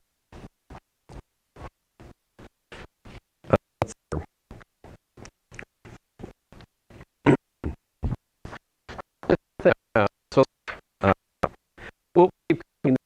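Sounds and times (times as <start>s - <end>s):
choppy lecture speech: 3.4s - 4.3s.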